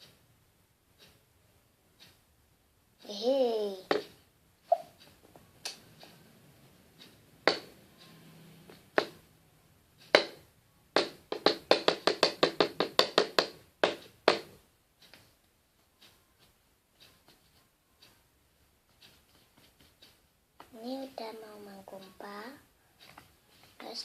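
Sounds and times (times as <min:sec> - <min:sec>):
taps and clicks in a container: 0:11.0 - 0:14.5.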